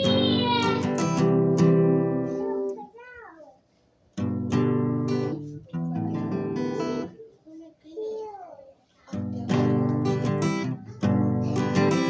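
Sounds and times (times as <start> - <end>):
acoustic guitar strumming: 0.0 - 2.8, 4.2 - 7.2, 9.1 - 12.0.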